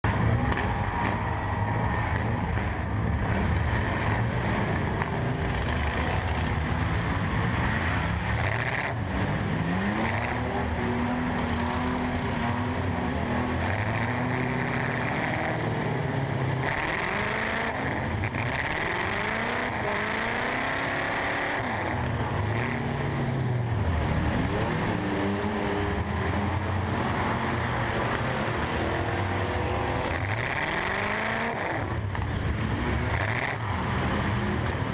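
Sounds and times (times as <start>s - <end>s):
truck engines revving: 0.0s - 34.9s.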